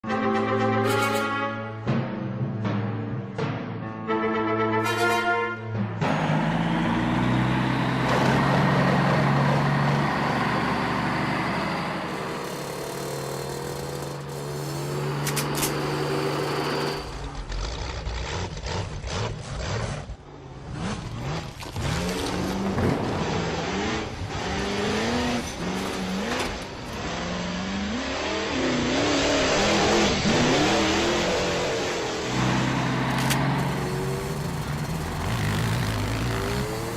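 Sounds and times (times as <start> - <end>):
heavy vehicle engine drone: 5.6 - 36.9
engine revving whine: 6.0 - 36.9
low engine drone: 28.7 - 36.9.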